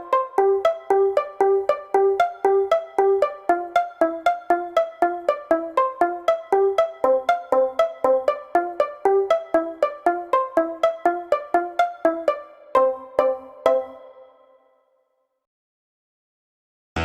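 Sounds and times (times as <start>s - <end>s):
light bouncy comedy music: 0.0s - 14.6s.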